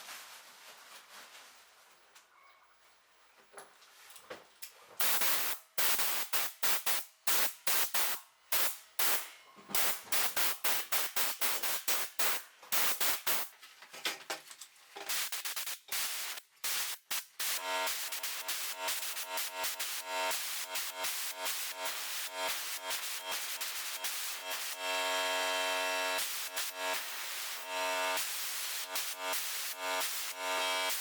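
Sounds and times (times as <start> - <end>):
compressed air hissing bursts: 5.0 - 13.5, 15.1 - 24.8, 26.2 - 31.0.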